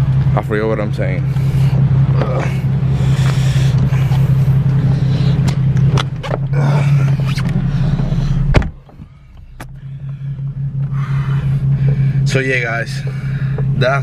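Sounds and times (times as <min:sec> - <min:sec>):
car engine droning: 0:00.0 - 0:14.0.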